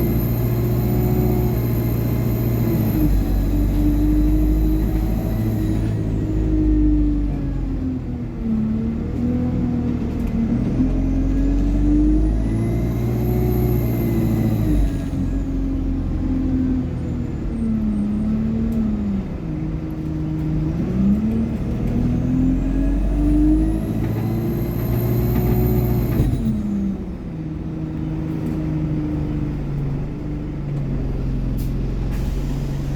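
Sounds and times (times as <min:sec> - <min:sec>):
bus diesel engine accelerating: 0:00.0 - 0:32.9.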